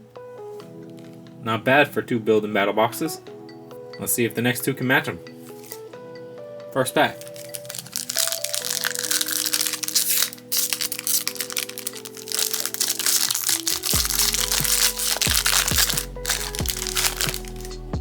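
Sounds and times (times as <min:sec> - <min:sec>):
background music: 0:00.0 - 0:18.0
foil wrapper crinkling: 0:05.6 - 0:05.8, 0:07.1 - 0:17.8
bass beat: 0:14.0 - 0:18.0.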